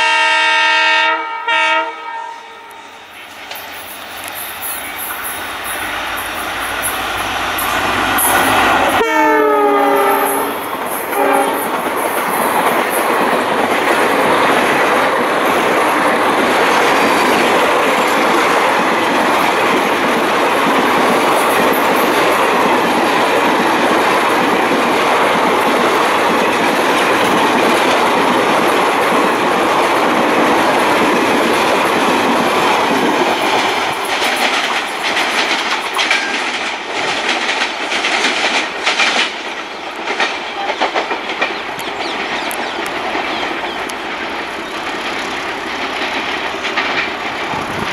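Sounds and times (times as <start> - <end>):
locomotive horn: 0.0 - 3.0, 9.0 - 11.7
train wheels rushing on rail: 0.0 - 47.9
wheels clicking over rail joints: 9.6 - 47.9.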